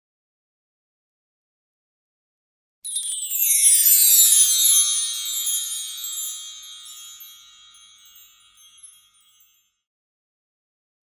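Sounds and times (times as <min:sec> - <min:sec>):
tinkling sparkle sound effect: 0:02.9 - 0:09.8.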